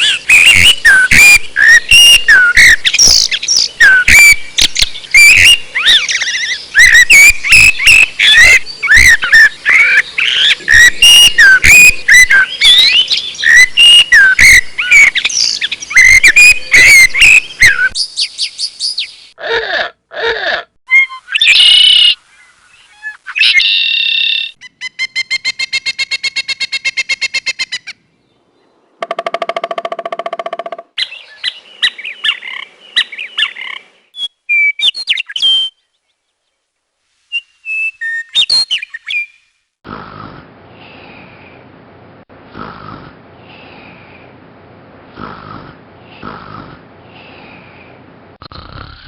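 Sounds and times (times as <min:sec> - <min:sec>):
bird trilling: 0:00.0 - 0:18.0
bird calls: 0:00.0 - 0:19.4, 0:30.9 - 0:36.1
chirps and whistles: 0:00.0 - 0:19.4, 0:33.0 - 0:35.9, 0:37.3 - 0:39.5
raspy breathy sound: 0:42.6 - 0:44.2, 0:45.2 - 0:47.7.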